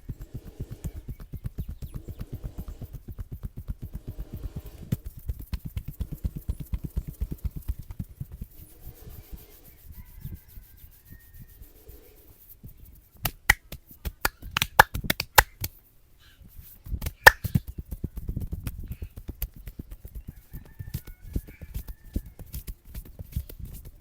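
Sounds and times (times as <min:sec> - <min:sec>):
soft patting: 0:00.0 - 0:15.8
hand slaps on head: 0:13.2 - 0:15.8, 0:17.0 - 0:17.7.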